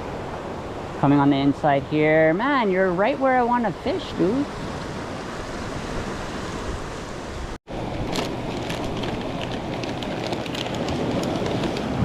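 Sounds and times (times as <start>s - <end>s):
strong wind on microphone: 3.0s - 12.0s.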